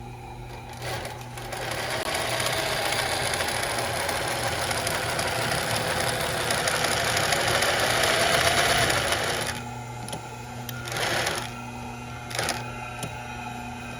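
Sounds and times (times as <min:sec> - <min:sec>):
sewing machine running: 0:00.5 - 0:09.6, 0:10.8 - 0:11.5, 0:12.3 - 0:12.6.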